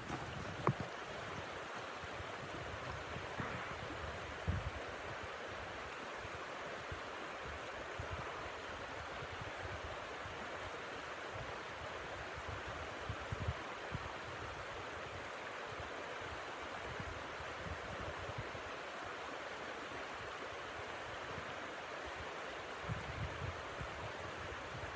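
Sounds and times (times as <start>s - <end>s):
blizzard wind hissing: 0.0s - 4.9s
wind buffeting microphone: 0.0s - 5.8s.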